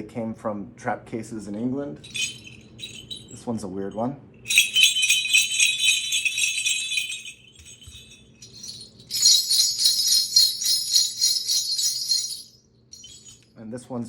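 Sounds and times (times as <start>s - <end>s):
sleigh bells jingling: 2.0s - 3.6s, 4.5s - 13.5s.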